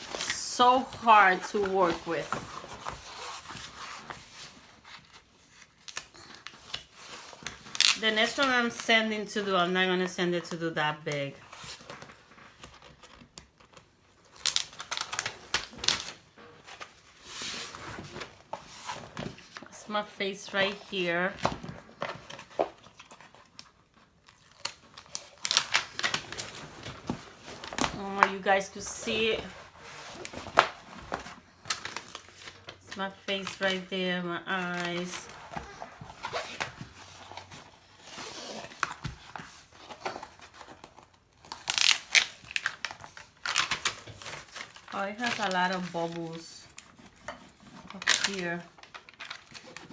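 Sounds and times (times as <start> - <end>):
plastic cover clicking and crinkling: 11.7 - 17.1, 21.4 - 28.4, 38.6 - 49.9
loud plastic crackles: 11.8 - 17.0, 21.4 - 28.1, 34.8 - 47.1, 47.8 - 49.9.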